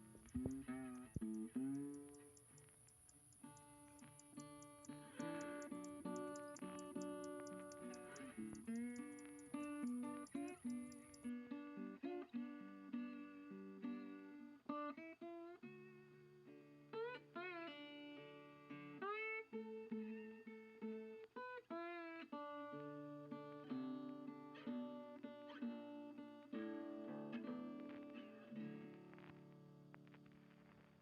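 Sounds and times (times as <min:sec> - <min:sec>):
plucked guitar music: 0:00.0 - 0:31.0.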